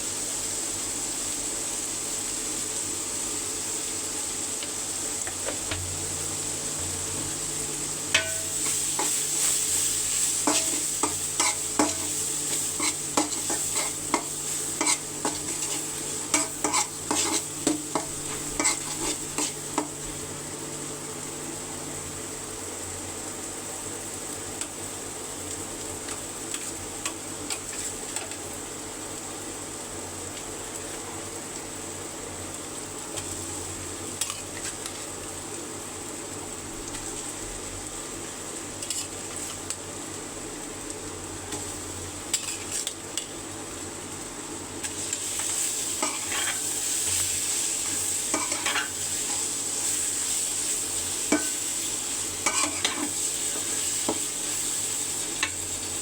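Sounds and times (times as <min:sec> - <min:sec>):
food sizzling in hot oil: 0:00.0 - 0:56.0
spatula scraping pot: 0:10.4 - 0:19.9, 0:46.0 - 0:46.6, 0:47.8 - 0:49.4, 0:52.4 - 0:53.8.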